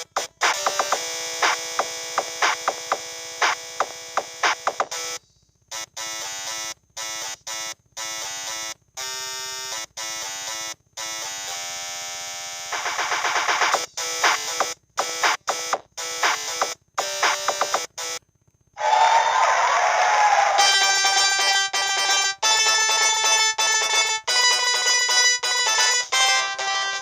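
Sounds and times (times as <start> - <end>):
mobile phone ringtone: 20.6 - 27.0.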